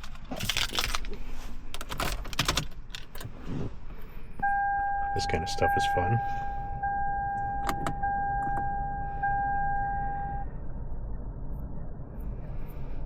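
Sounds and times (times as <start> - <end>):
low rumble: 3.3 - 13.0
steady electronic tone: 4.4 - 12.4.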